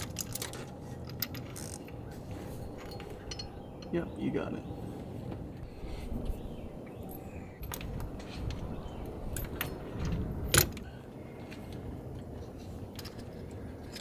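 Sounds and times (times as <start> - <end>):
metal tools clicking and clinking: 0.0 - 4.0.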